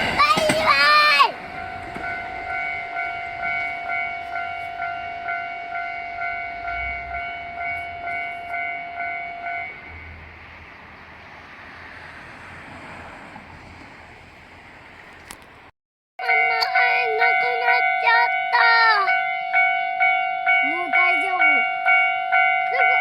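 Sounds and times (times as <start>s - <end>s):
level crossing alarm bell ringing: 0.2s - 10.1s, 16.2s - 23.0s.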